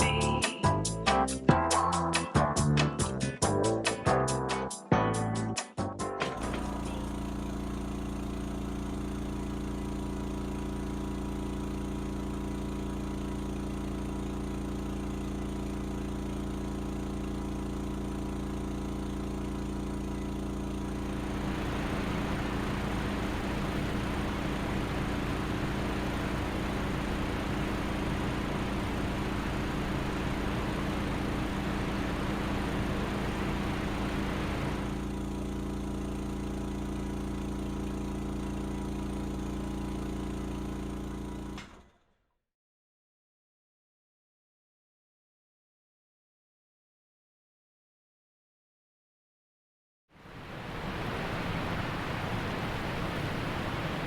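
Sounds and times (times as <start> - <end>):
tractor diesel engine running: 6.4 - 41.0.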